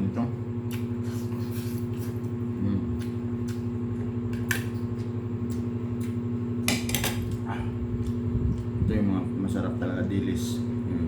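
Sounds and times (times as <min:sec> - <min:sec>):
steady mechanical hum: 0:00.0 - 0:11.0
crunchy chewing: 0:00.6 - 0:06.5.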